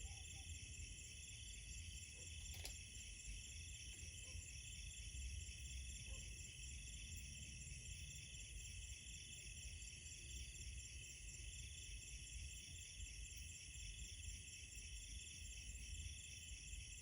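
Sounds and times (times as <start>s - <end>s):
crickets and insects trilling: 0.0s - 17.0s
sharp click: 2.5s - 2.8s.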